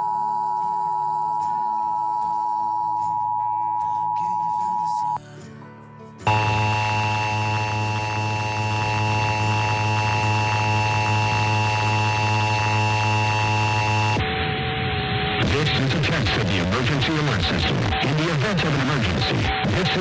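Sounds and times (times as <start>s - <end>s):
low buzz: 6.3s - 16.0s
distorted two-tone alert signal: 6.3s - 20.0s.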